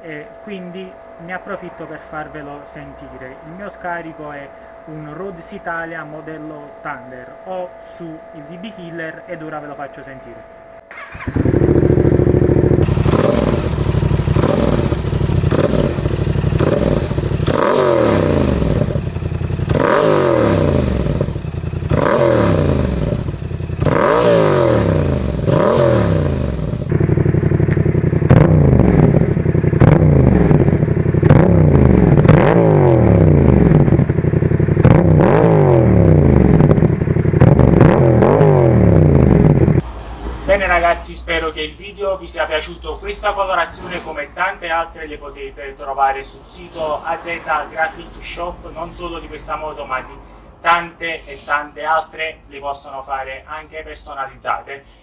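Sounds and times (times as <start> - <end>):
motorcycle engine revving: 10.9 - 40.3.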